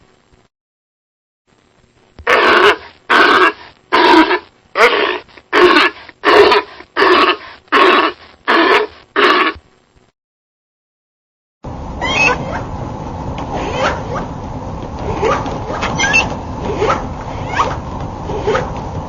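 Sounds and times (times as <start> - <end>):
sea lion barking: 2.2 - 9.6, 12.0 - 12.7, 13.5 - 14.4, 15.0 - 18.8.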